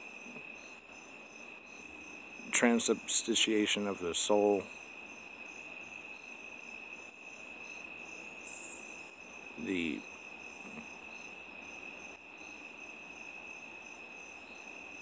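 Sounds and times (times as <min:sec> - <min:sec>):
crickets chirping: 0:00.0 - 0:15.0
man making wordless vocal sound: 0:09.6 - 0:10.0.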